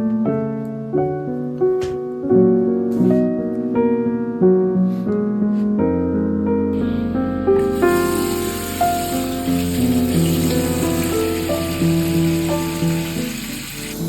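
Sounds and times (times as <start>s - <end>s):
gentle piano music: 0.0s - 14.0s.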